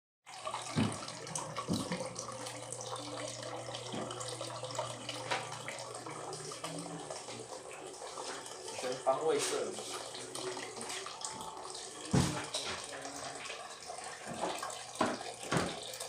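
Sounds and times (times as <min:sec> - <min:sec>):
water running and splashing: 0:00.3 - 0:16.0.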